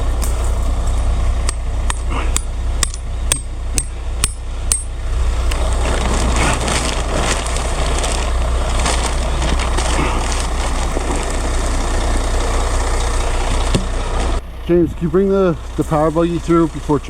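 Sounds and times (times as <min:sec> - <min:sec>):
diesel truck engine running: 0:00.0 - 0:17.0
rough rushing noise: 0:03.9 - 0:14.8.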